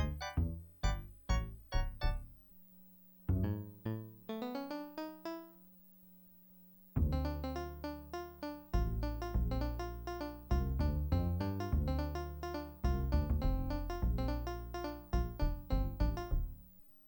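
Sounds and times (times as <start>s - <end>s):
keyboard piano notes and chords: 0.0s - 2.3s, 3.3s - 5.7s, 7.0s - 16.6s
heavy bass line: 7.0s - 7.8s, 8.8s - 16.6s.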